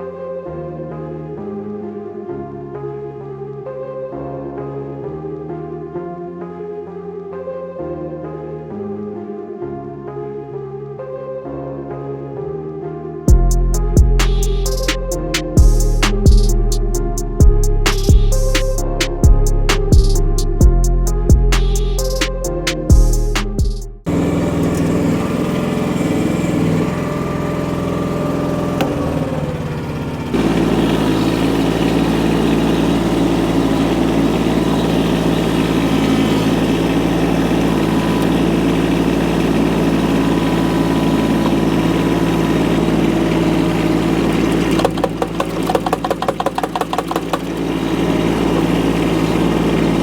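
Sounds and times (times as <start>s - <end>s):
excavator engine running: 13.3s - 50.0s
rapid rattling: 13.4s - 20.3s, 44.4s - 50.0s.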